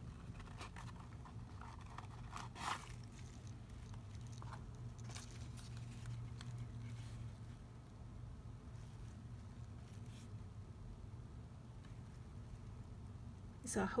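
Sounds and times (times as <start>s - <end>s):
paper box rustling and tapping: 0.0s - 6.6s
steady low hum: 0.0s - 14.0s.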